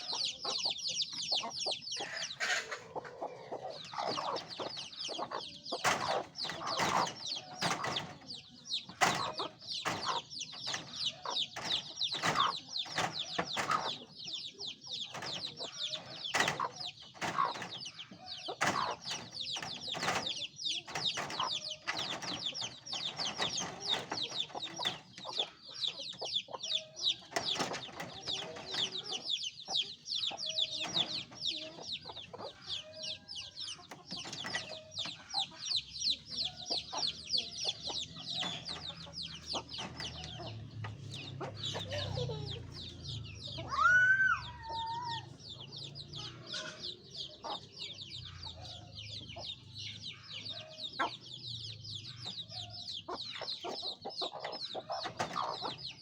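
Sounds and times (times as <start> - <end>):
chickens clucking: 0.0 - 56.0
chicks peeping: 0.0 - 56.0.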